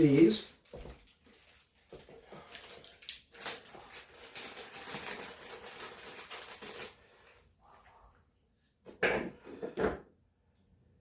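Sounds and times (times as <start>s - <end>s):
rustling of handled parts: 0.0s - 7.5s.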